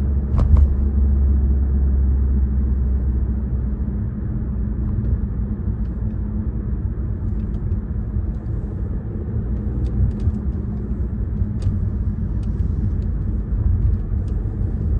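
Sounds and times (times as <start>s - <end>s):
tyre and road noise: 0.0s - 14.9s.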